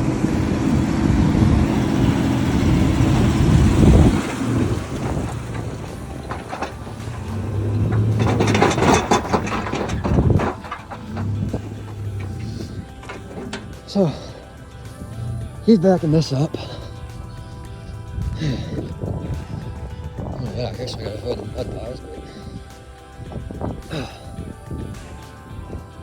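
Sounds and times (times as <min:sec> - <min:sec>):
vehicle engine running: 0:00.0 - 0:26.0
knocks and rattles: 0:02.8 - 0:14.5.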